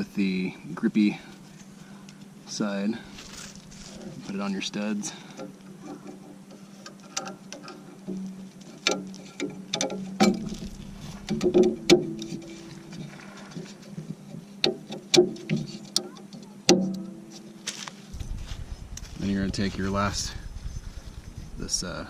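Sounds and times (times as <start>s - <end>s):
steady low hum: 0.0s - 22.0s
hardware clicks and knocks: 5.2s - 17.5s.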